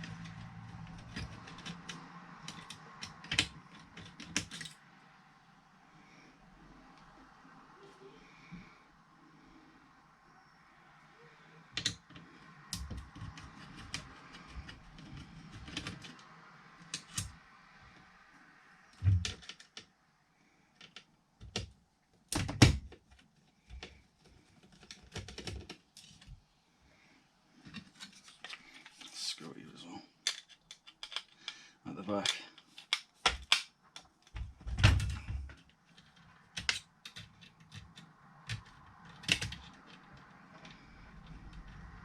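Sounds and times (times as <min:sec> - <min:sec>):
hands and tools handling radio: 0:00.0 - 0:04.9, 0:11.6 - 0:18.1, 0:19.0 - 0:19.9, 0:20.7 - 0:26.4, 0:27.6 - 0:29.4, 0:30.1 - 0:42.0.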